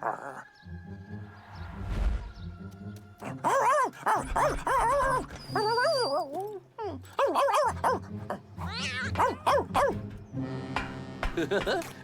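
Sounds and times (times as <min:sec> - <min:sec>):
cartoon dog yips and whines: 0:03.5 - 0:08.0, 0:08.6 - 0:10.0.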